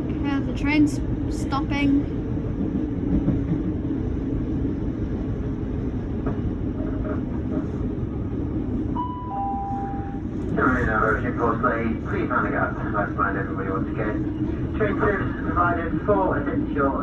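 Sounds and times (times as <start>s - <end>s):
train carriage rumble: 0.0s - 17.0s
two-note falling chime: 9.0s - 10.2s.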